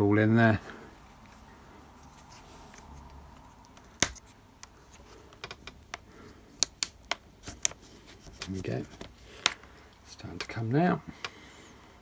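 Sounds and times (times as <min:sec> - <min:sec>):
plastic clips snapping: 0:03.4 - 0:09.8
pry tool clicking on plastic: 0:03.6 - 0:08.5.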